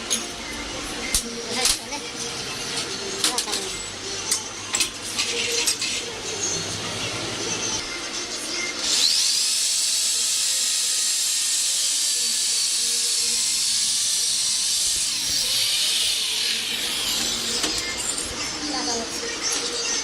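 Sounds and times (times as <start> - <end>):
power tool hissing on metal: 8.8 - 18.2.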